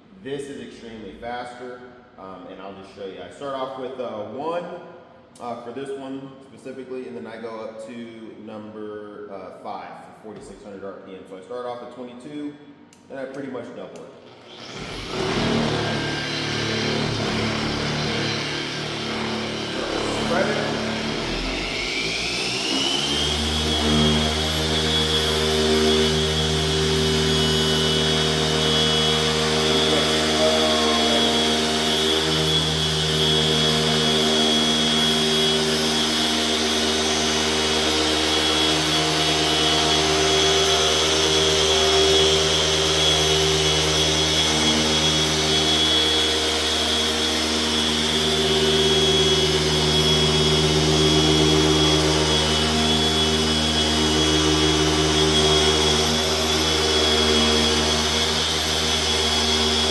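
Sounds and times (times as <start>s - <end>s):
electric polisher humming: 14.3s - 59.9s.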